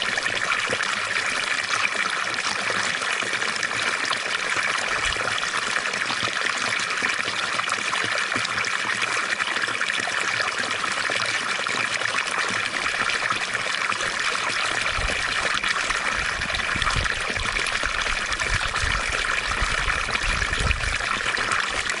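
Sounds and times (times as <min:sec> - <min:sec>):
water fountain splashing: 0:00.0 - 0:22.0.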